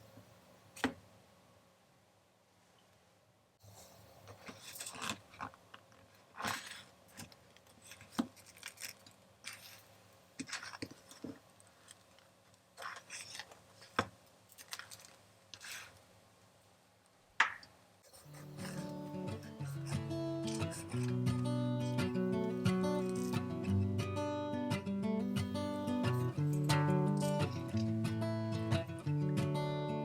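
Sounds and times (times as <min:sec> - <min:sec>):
kitchen utensils tapping and scraping: 0:18.1 - 0:22.1, 0:22.7 - 0:23.5.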